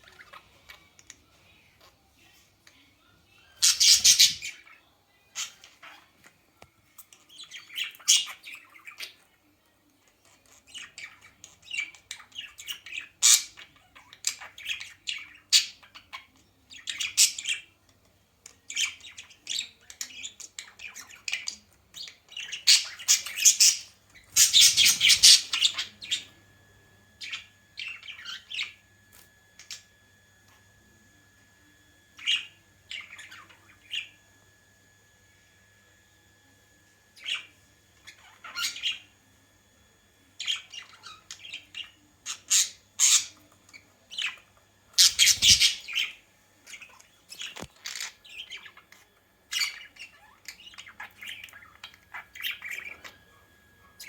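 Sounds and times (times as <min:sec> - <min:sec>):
bird squawking and chirping: 0:00.0 - 0:00.9, 0:03.4 - 0:06.1, 0:10.6 - 0:17.7, 0:18.7 - 0:26.4, 0:37.2 - 0:39.1, 0:40.4 - 0:48.8, 0:49.5 - 0:53.2.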